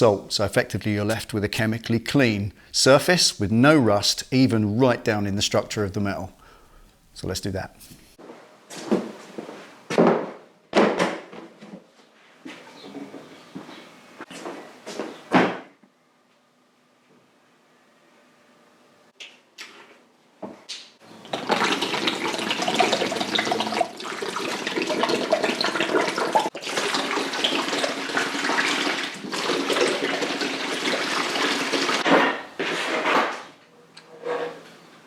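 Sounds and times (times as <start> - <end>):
liquid pouring into container: 21.2 - 32.0.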